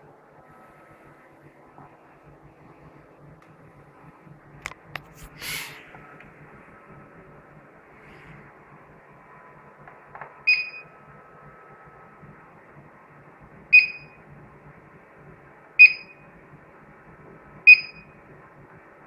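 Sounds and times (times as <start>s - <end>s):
security alarm beeps: 10.5s - 10.9s, 13.7s - 14.2s, 15.8s - 16.2s, 17.7s - 18.1s.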